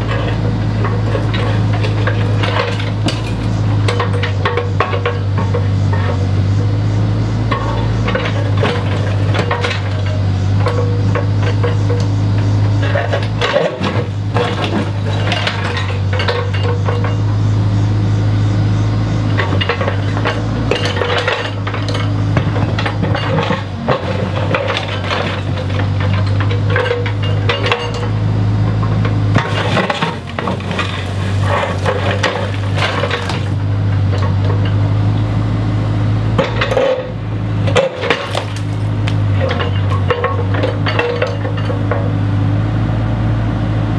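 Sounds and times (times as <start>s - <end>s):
diesel engine running: 0.0s - 43.9s
bricks clattering and falling: 12.8s - 17.1s, 19.5s - 28.0s, 29.3s - 33.6s, 37.7s - 41.8s.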